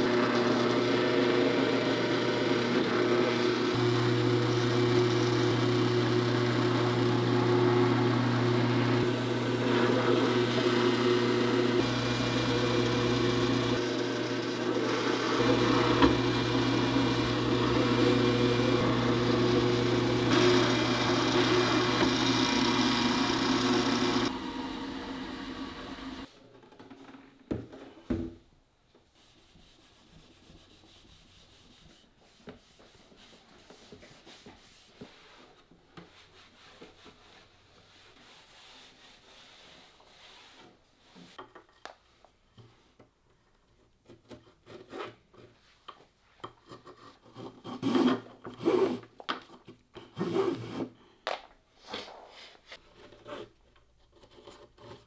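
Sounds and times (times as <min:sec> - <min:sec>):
woodworking machine running: 0:00.0 - 0:26.3.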